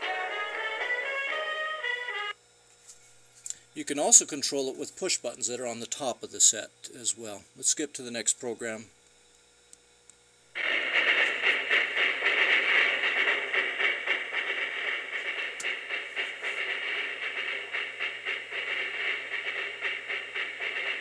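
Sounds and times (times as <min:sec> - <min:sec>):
tv program soundtrack on radio speaker: 0:10.6 - 0:21.0.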